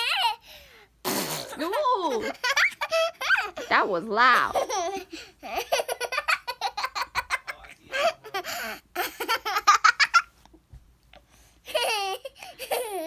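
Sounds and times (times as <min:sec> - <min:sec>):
young child laughing: 0:11.7 - 0:13.0.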